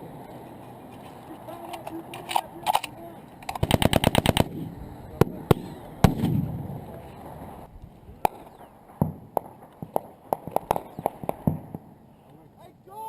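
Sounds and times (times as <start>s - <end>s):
gunshots: 3.5s - 6.7s, 8.2s - 11.9s
rumbling gunshot echo: 3.6s - 6.8s.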